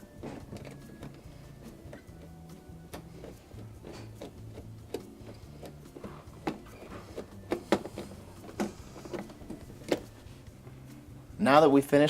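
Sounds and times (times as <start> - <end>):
parts and tools clicking and knocking: 0.0 - 10.2.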